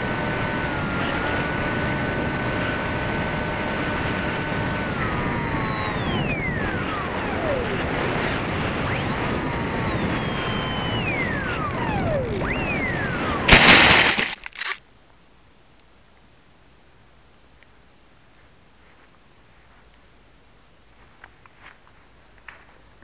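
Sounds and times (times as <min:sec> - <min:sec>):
electric motor and propeller whining: 0:00.0 - 0:14.8
crunching impact on ground: 0:13.5 - 0:14.8.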